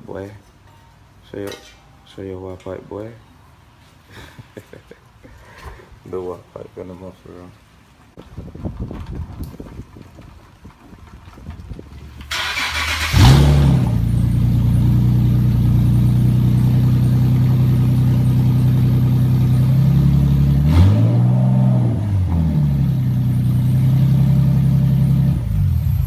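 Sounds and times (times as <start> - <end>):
car engine starting and idling: 11.5 - 26.0
engine revving: 12.3 - 26.0.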